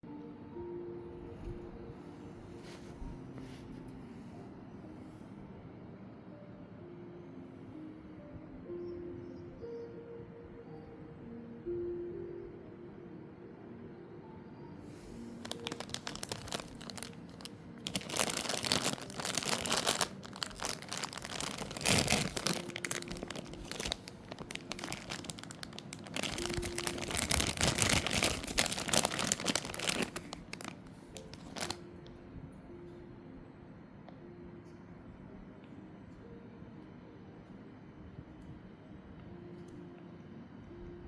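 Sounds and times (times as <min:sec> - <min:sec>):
packaging tearing and crinkling: 0:15.4 - 0:31.8.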